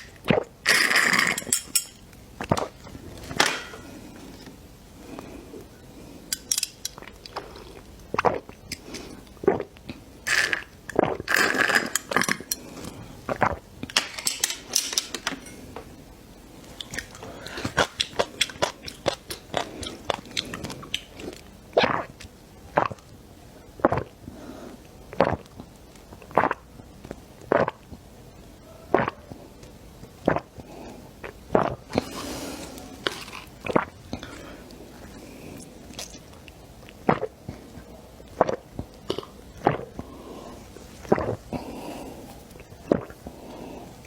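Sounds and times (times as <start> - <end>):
crunchy food being chewed: 16.7 - 23.1.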